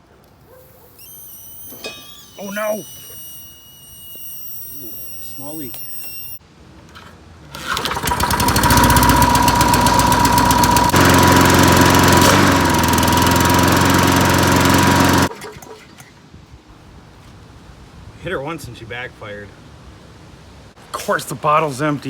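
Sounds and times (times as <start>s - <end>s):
steady high tone: 0.8s - 6.4s
lawn mower engine running: 7.5s - 15.5s.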